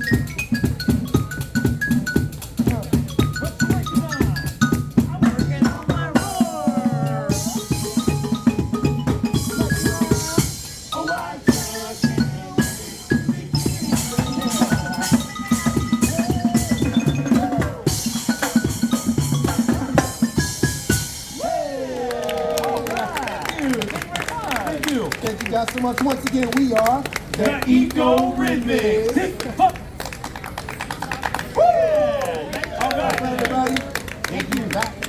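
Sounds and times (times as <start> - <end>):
mallet instrument melody: 0.0 - 21.3
drum beat: 0.0 - 21.5.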